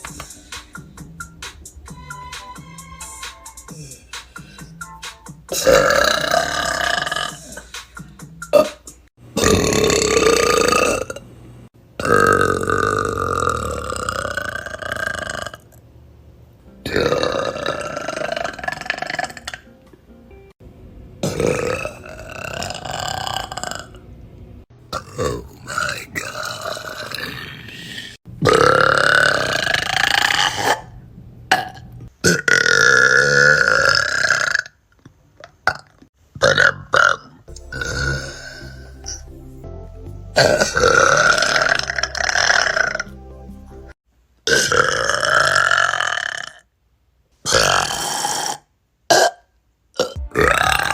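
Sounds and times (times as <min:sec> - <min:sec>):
women belching loudly: 0:05.6 - 0:07.5, 0:09.4 - 0:11.2, 0:24.9 - 0:30.7.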